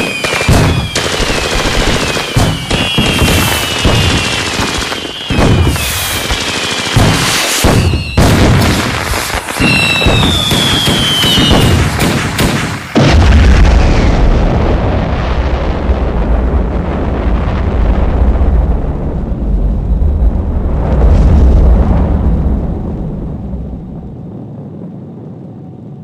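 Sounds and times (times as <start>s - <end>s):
fireworks whistles sliding down: 0.0s - 12.0s
fireworks bangs and crackles: 0.0s - 26.0s
heavy boom with low rumble: 11.4s - 25.5s.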